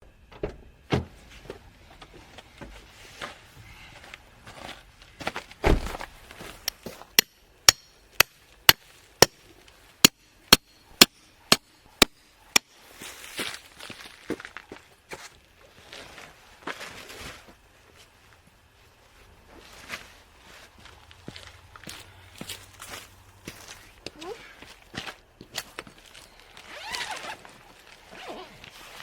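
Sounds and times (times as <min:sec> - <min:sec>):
hammer strikes: 0:07.2 - 0:09.4, 0:10.0 - 0:12.7.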